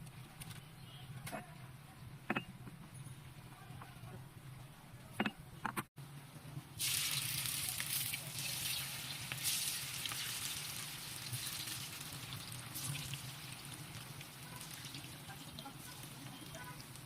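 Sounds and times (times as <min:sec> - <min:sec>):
food sizzling in hot oil: 0:06.8 - 0:17.0.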